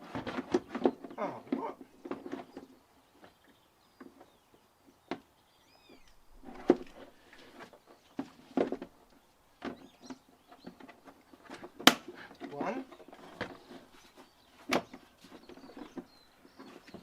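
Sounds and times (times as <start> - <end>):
bird chirps: 0.6 - 17.0.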